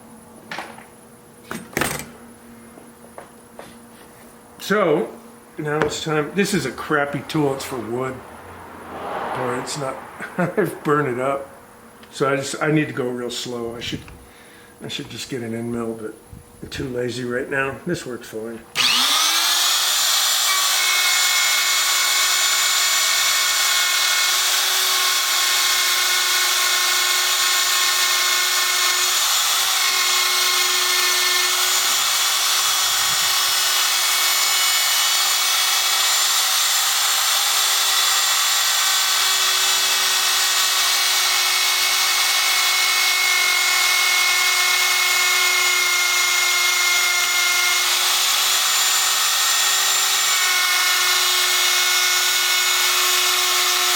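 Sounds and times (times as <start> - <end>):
electric router whining: 18.7 - 53.9.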